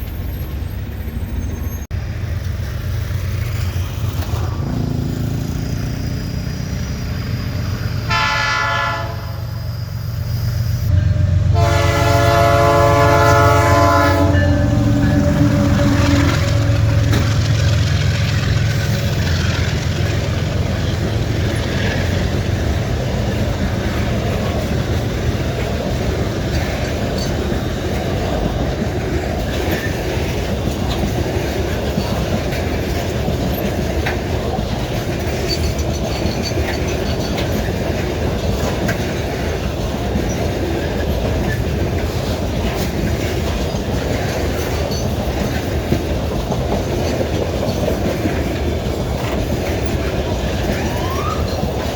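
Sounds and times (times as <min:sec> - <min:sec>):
faint wheel squeal: 0:00.0 - 0:01.9, 0:05.5 - 0:08.1, 0:09.2 - 0:11.0
locomotive engine drone: 0:00.0 - 0:51.9
train wheels clacking over rail joints: 0:11.6 - 0:51.9.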